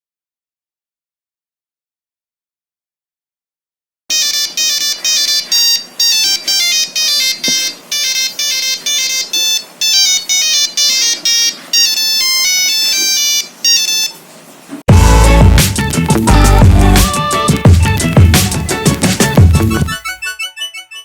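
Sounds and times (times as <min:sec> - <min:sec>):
monophonic phone ringtone beeps: 0:04.1 - 0:14.2.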